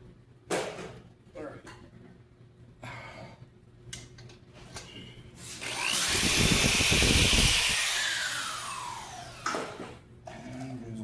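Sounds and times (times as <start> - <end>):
electric power tool whining: 5.5 - 9.8.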